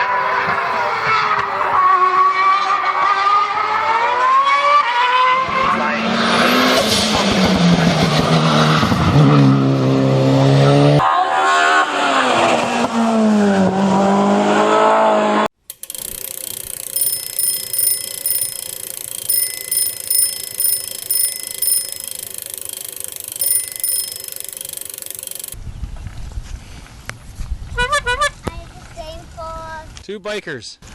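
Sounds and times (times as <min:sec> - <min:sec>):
steady engine hum: 0:16.0 - 0:25.6.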